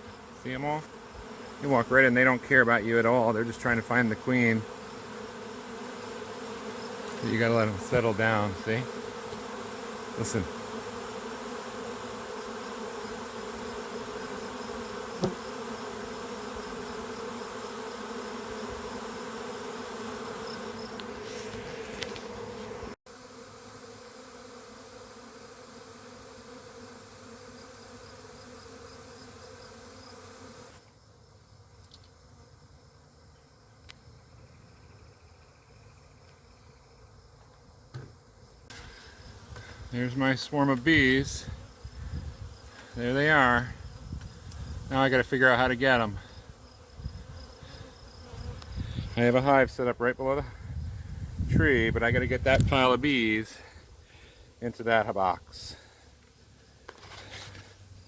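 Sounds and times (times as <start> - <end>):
bee swarm humming: 0.0 - 58.0.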